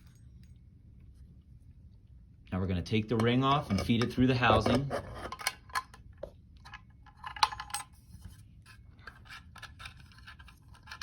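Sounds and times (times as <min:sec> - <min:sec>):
small parts clicking and scraping: 0:06.6 - 0:11.0.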